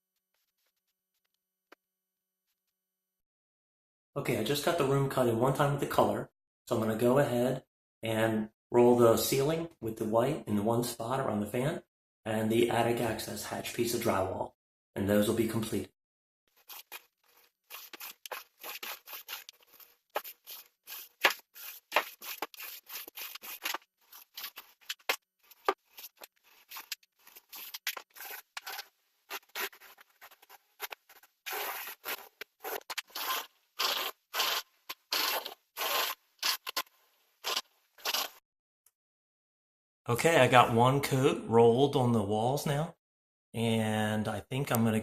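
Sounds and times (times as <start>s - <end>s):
paint roller scraping on wall: 16.5s - 36.7s.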